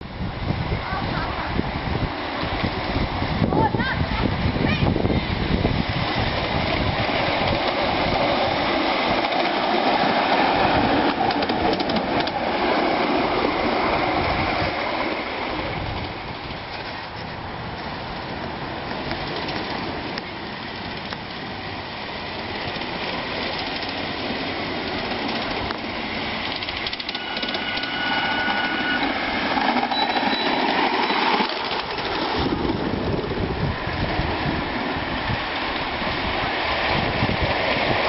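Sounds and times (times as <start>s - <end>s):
train wheels clattering on rails: 5.5s - 21.7s, 22.3s - 38.0s
train whistle: 27.1s - 31.3s.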